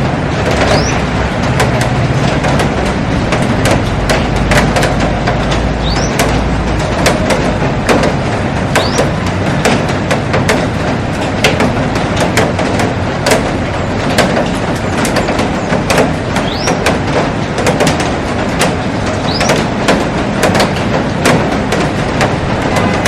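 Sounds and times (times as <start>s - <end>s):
heavy rain on glass roof: 0.0s - 23.0s.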